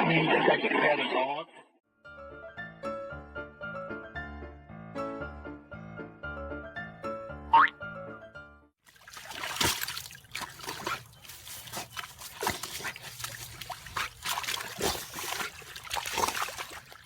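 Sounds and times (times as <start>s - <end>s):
dog splashing in water: 8.9s - 17.0s.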